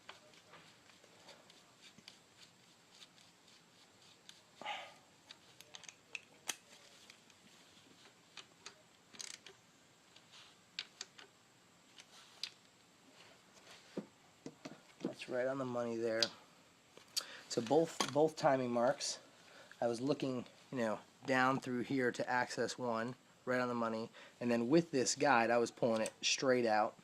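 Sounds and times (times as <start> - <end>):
metal parts clicking and tapping: 5.3 - 7.4, 8.3 - 9.6.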